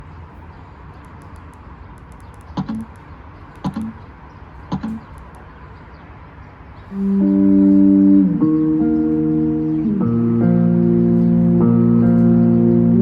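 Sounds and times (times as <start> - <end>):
button click: 2.6 - 3.0, 4.7 - 5.2.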